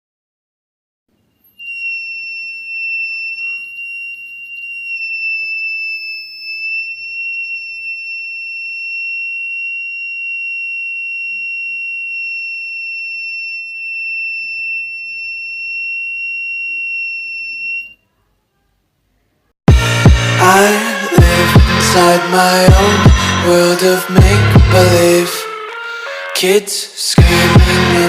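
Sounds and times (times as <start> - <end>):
alarm buzzer high-pitched tone: 1.4 - 18.0, 19.7 - 25.7.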